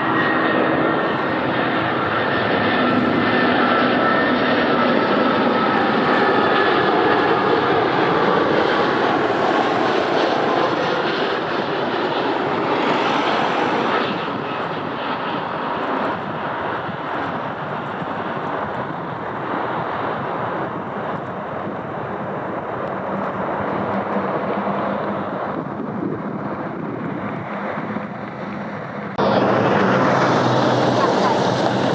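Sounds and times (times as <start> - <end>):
airliner engines rushing: 0.0 - 31.9
faint engine whine: 26.8 - 31.9.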